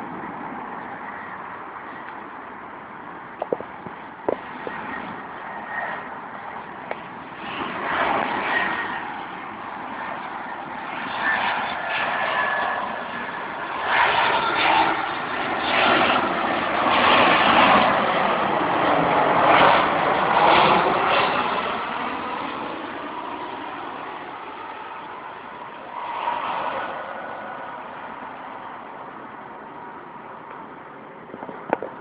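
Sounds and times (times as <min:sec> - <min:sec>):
jet airliner landing roar: 0:00.0 - 0:32.0.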